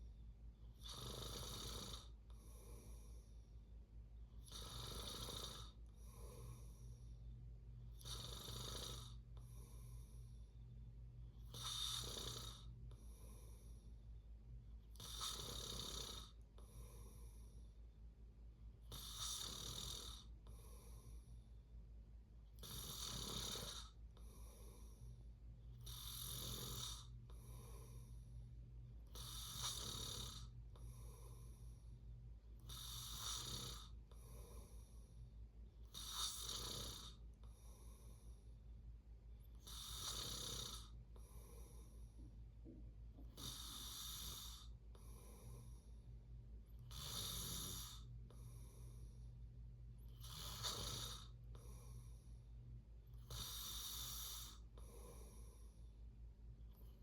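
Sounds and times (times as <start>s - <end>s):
steady low hum: 0.0s - 15.2s, 16.2s - 19.1s, 20.2s - 36.4s, 37.0s - 40.1s, 40.7s - 57.0s
person snoring: 0.8s - 3.2s, 4.5s - 6.9s, 8.0s - 10.0s, 11.5s - 13.7s, 14.9s - 17.3s, 18.9s - 21.1s, 22.6s - 25.1s, 25.8s - 28.1s, 29.1s - 31.6s, 32.7s - 35.0s, 36.0s - 37.8s, 39.6s - 41.9s, 43.4s - 45.8s, 46.9s - 49.1s, 50.1s - 52.0s, 53.2s - 55.6s.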